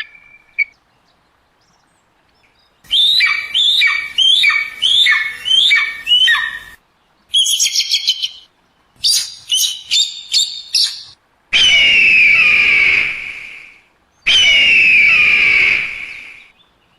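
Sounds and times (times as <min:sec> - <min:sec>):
eagle chirping: 0:00.0 - 0:00.8, 0:02.9 - 0:12.6
eagle descending screams: 0:02.9 - 0:06.8, 0:11.6 - 0:13.6, 0:14.3 - 0:16.4
eagle piping notes: 0:02.9 - 0:08.4, 0:09.0 - 0:13.5.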